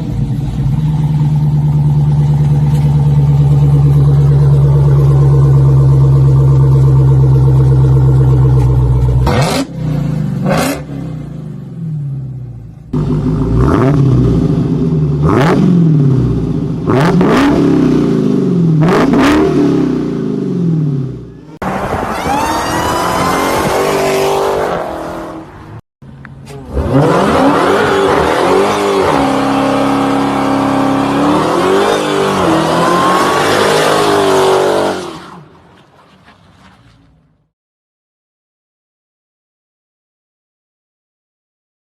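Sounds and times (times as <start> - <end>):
car engine revving: 0.0 - 25.8, 26.4 - 37.0
car accelerating hard: 26.6 - 36.8.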